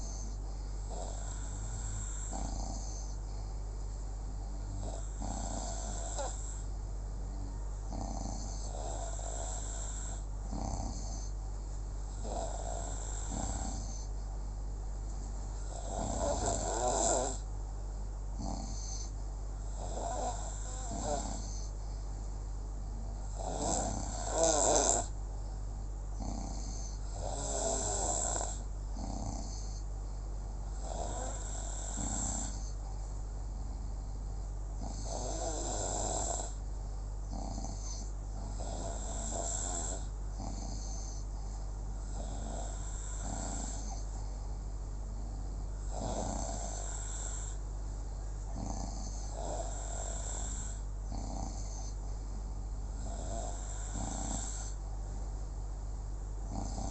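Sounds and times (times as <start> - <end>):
person snoring: 0.0 - 3.5, 4.6 - 6.7, 7.9 - 11.4, 12.2 - 14.1, 15.6 - 17.4, 18.4 - 21.7, 23.2 - 25.2, 26.2 - 29.8, 30.7 - 32.8, 34.8 - 36.6, 37.3 - 41.3, 42.0 - 44.1, 45.8 - 47.6, 48.5 - 52.0, 53.0 - 54.8, 56.5 - 56.9
steady low hum: 0.0 - 56.9.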